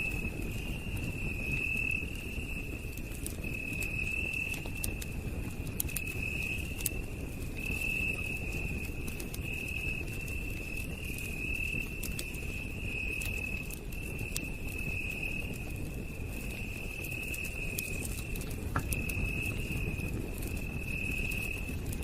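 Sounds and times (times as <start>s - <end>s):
campfire crackling and popping: 0.0s - 22.0s
night insects trilling: 0.0s - 22.0s.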